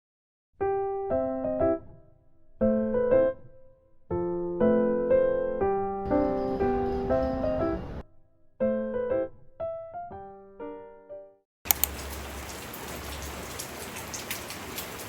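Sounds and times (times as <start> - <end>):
electric piano melody: 0.6 - 11.4.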